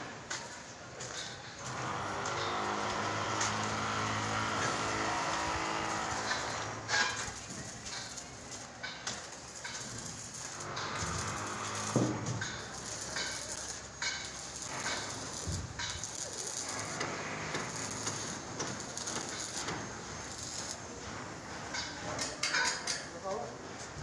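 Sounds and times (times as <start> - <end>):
steady hiss: 5.6 - 21.7
knocks and clatters: 5.9 - 23.0.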